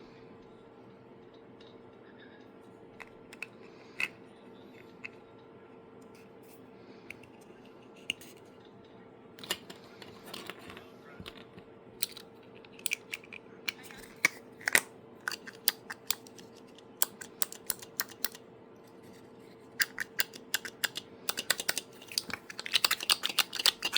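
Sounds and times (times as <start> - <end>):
plastic clicker clicking: 12.8 - 18.4.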